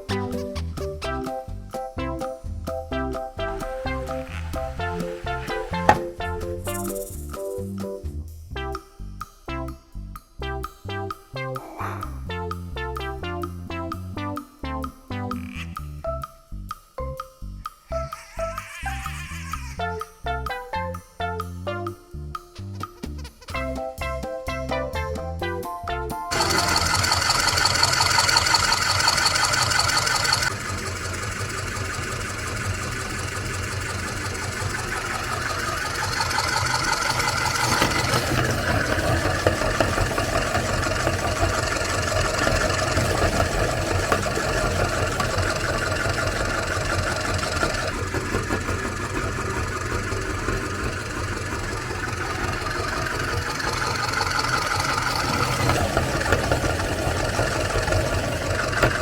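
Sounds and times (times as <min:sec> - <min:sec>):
meat grinder motor running: 0:04.3 - 0:07.4, 0:26.3 - 0:59.0.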